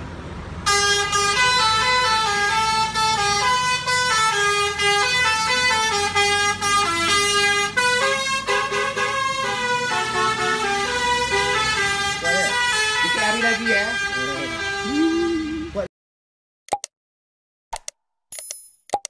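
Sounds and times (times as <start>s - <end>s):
musical air horn playing a tune: 0.7s - 15.7s.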